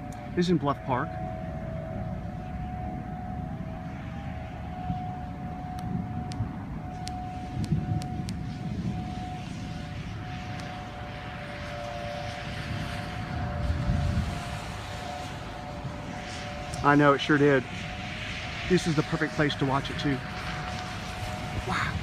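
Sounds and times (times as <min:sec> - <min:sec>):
distant warning sirens: 0:00.0 - 0:22.0
loud low rumble: 0:00.0 - 0:22.0
sharp clicks: 0:07.0 - 0:08.4.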